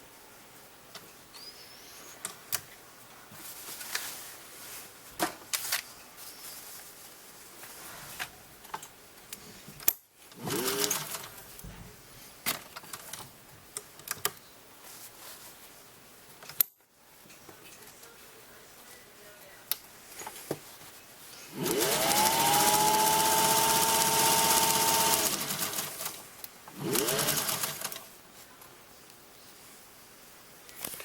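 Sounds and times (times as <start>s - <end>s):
fabric rustling: 3.3s - 8.4s
sewing machine clicks and knocks: 21.6s - 28.0s.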